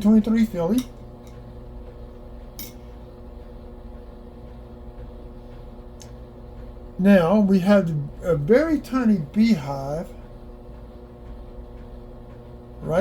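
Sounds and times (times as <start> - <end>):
steady low hum: 0.0 - 13.0.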